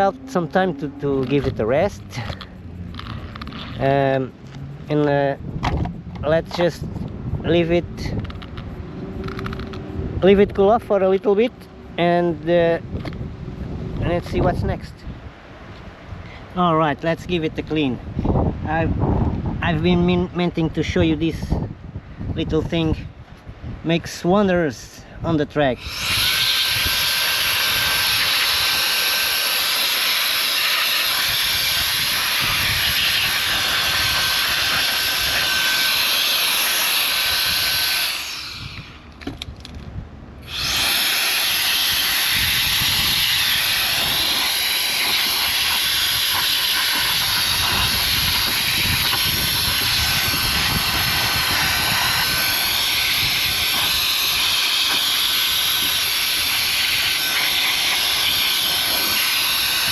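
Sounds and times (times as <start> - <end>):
air blower rushing: 25.8 - 39.3, 40.4 - 59.9.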